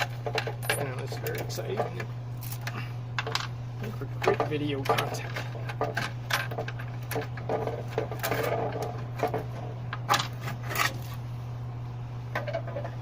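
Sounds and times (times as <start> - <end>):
hard parts clicking and knocking: 0.0 - 10.4
steady low hum: 0.0 - 13.0.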